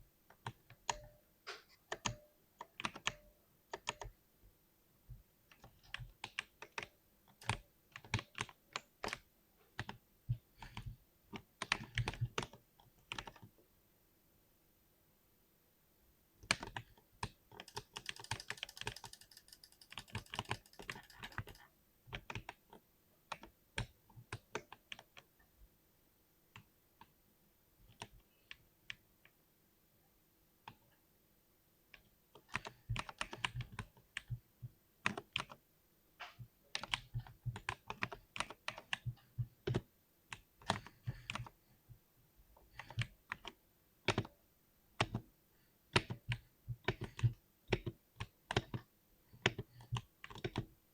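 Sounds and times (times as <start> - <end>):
typing on mechanical keyboard: 1.9 - 2.2, 5.6 - 9.2, 16.5 - 22.6, 32.5 - 34.4, 36.3 - 41.6, 42.7 - 44.3, 45.9 - 50.7.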